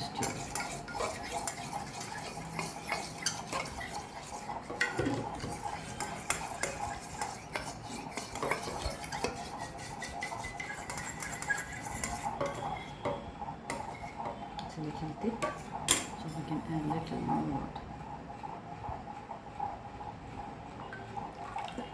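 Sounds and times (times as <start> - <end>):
fork clinking and scraping bowl: 0.0 - 14.4.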